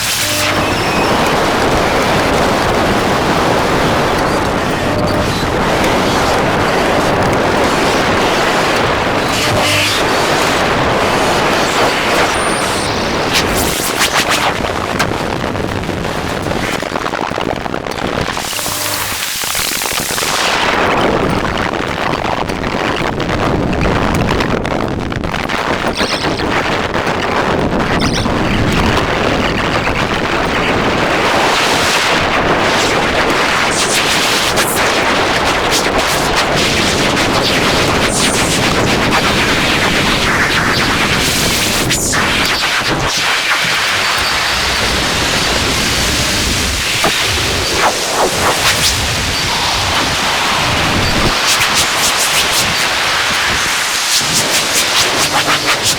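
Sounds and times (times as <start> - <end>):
distorted static noise music: 0.0 - 55.9
swells of hiss: 47.0 - 55.9.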